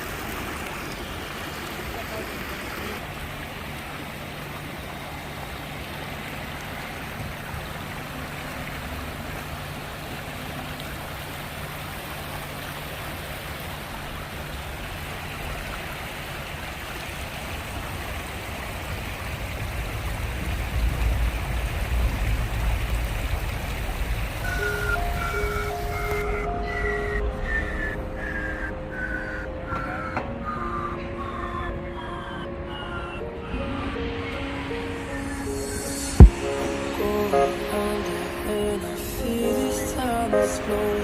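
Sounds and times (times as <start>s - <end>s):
water flowing: 0.0s - 41.0s
low hum: 3.0s - 40.4s
deep rumble: 17.8s - 37.1s.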